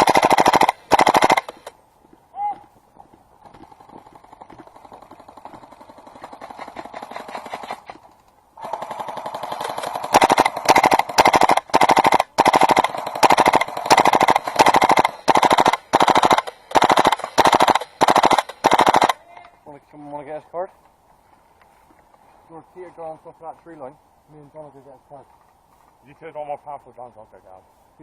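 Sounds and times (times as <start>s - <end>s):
airsoft guns firing bursts: 0.0s - 1.7s, 8.6s - 19.2s.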